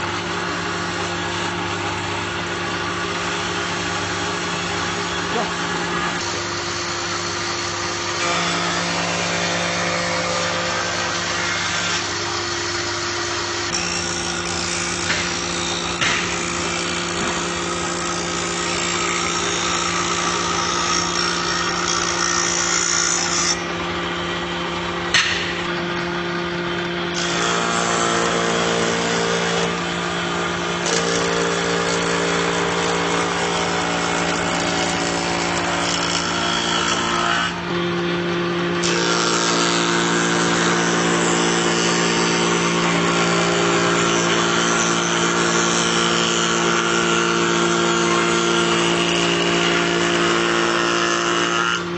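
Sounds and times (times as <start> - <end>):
planer machine cutting: 0.0 - 51.9
sharp knock: 25.1 - 25.6.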